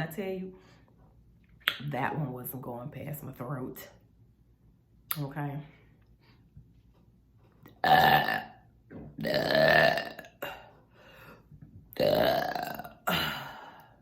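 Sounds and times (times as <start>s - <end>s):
woman burping: 7.8s - 8.6s, 9.2s - 10.8s, 11.9s - 13.9s.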